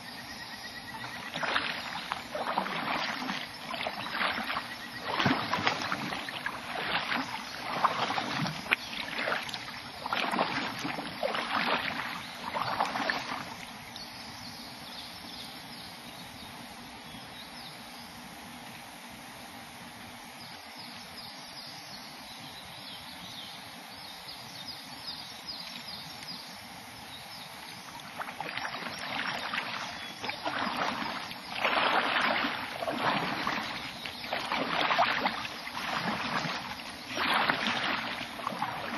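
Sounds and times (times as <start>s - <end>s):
faint water hiss: 0.0s - 38.9s
kayak paddle splashing in water: 0.9s - 14.0s, 27.8s - 38.9s.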